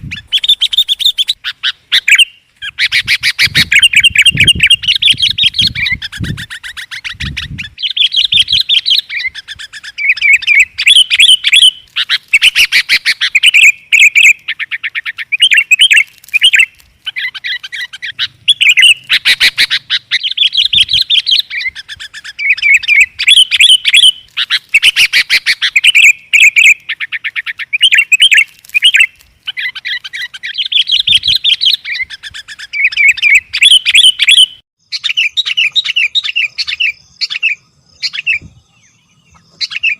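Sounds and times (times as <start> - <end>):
bulbuls chirping: 0.0 - 39.9.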